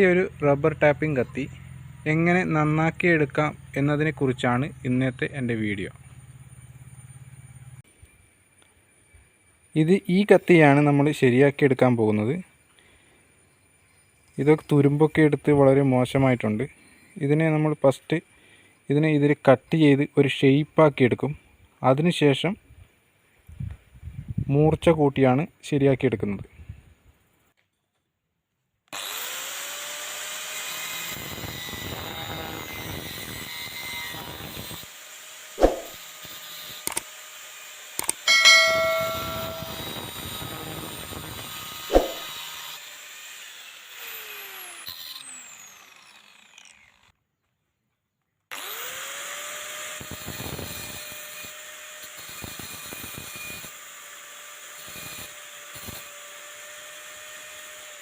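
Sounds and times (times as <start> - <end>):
electric grinder grinding steel: 29.0 - 47.1, 48.5 - 58.0
sharp knocks on blade: 41.9 - 42.2.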